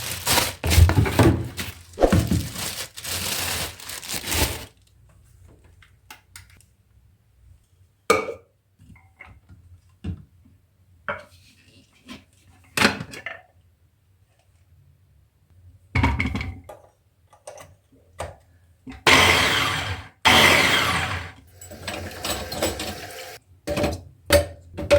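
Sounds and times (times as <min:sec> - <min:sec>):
kitchen items clattering: 0:00.0 - 0:04.8, 0:21.1 - 0:24.0.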